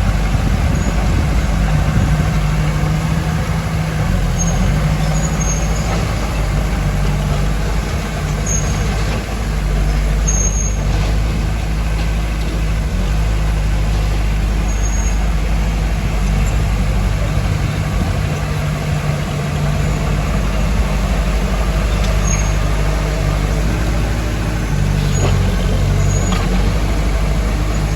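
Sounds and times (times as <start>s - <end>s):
heavy diesel engine running: 0.0s - 27.9s
high squeaks: 21.9s - 22.7s.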